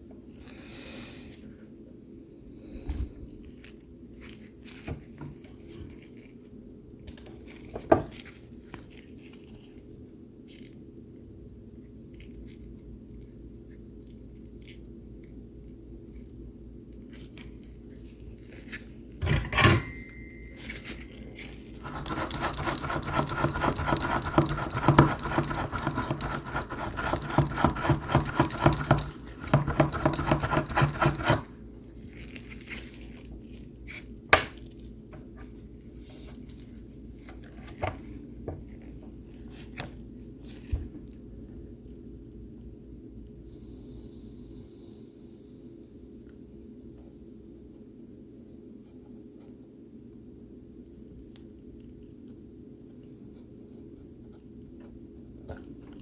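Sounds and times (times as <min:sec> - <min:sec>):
metal tool scraping circuit board: 0:21.8 - 0:31.5.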